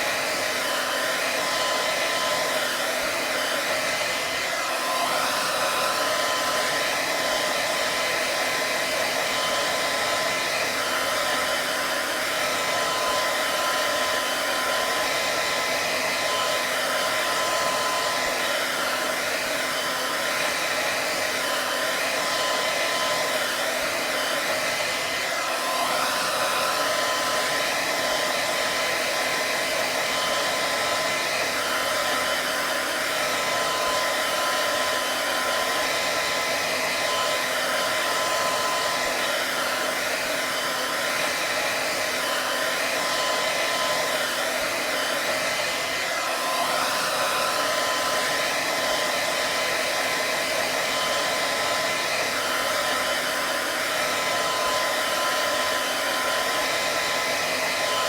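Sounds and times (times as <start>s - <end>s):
hair dryer running: 0.0s - 58.0s.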